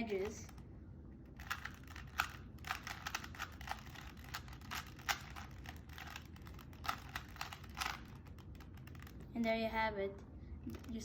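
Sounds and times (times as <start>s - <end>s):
puzzle cube layers clacking: 1.4s - 9.2s.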